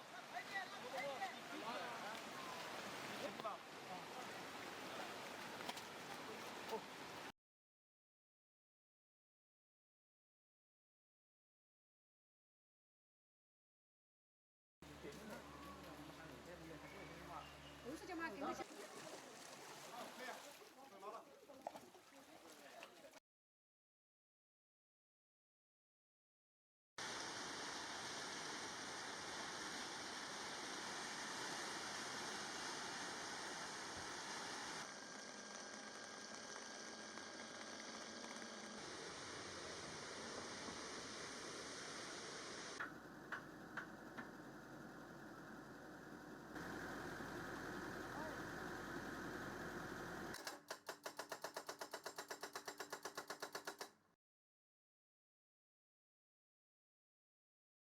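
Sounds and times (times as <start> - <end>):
loud even hiss: 27.0 - 34.8, 38.8 - 42.8
steady noise with low hum: 27.0 - 50.4.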